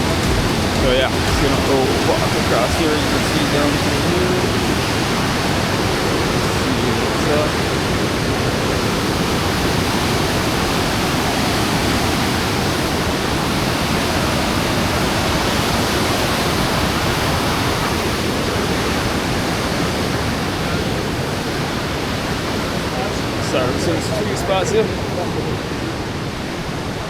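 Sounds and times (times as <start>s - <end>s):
waterfall roar: 0.0s - 27.0s.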